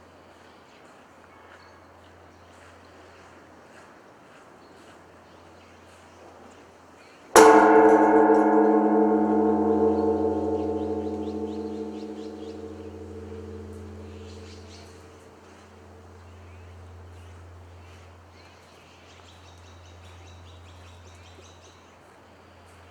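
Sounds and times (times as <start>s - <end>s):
large temple bell ringing: 7.4s - 15.0s.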